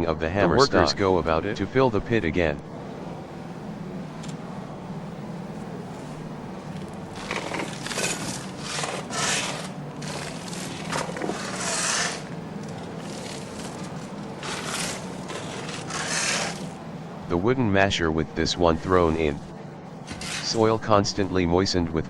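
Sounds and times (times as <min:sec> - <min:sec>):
low steady hum: 0:00.0 - 0:22.0
shovels scraping soil: 0:07.1 - 0:16.7, 0:20.1 - 0:20.7.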